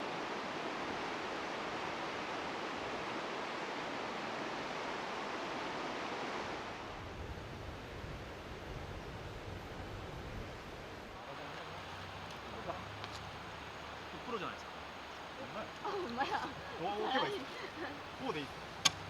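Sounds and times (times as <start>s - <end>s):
flowing river water: 0.0s - 7.1s, 11.0s - 19.0s.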